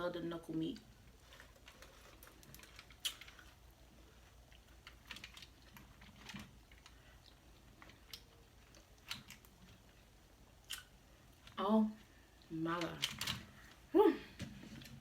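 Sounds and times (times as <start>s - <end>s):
crab shell cracking: 1.2s - 9.7s, 10.6s - 11.0s.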